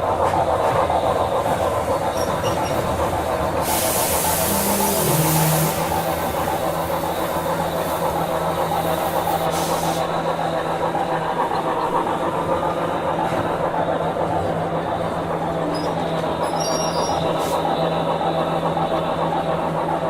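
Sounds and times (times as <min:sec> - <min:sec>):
steam locomotive running: 0:00.0 - 0:20.0
steam hissing: 0:01.2 - 0:14.3, 0:15.8 - 0:18.0.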